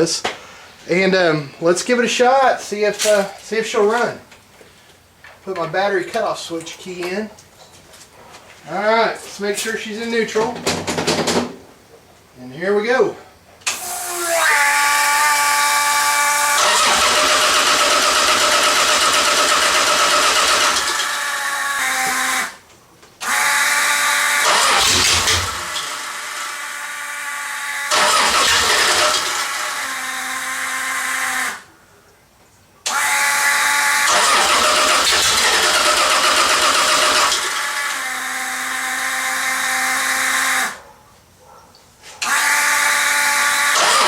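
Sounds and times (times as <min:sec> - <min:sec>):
starter motor cranking engine: 0:13.6 - 0:22.6, 0:23.2 - 0:31.7, 0:32.9 - 0:40.8, 0:42.2 - 0:44.0
starter whine: 0:13.6 - 0:31.7, 0:32.8 - 0:40.8, 0:42.2 - 0:44.0.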